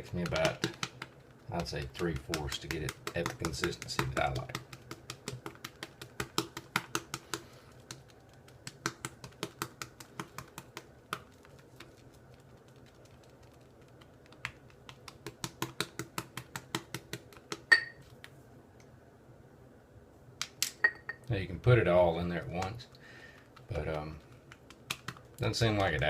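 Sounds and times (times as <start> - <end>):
glass clink: 17.7 - 18.0, 20.8 - 21.2.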